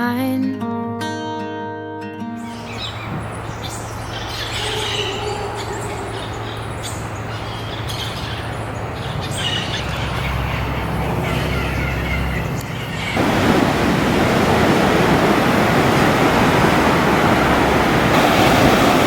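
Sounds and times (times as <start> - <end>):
birds chirping: 2.4 - 19.0.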